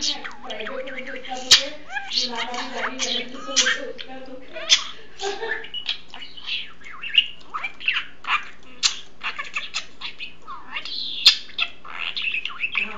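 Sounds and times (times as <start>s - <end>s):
budgerigar chattering: 0.0s - 12.9s.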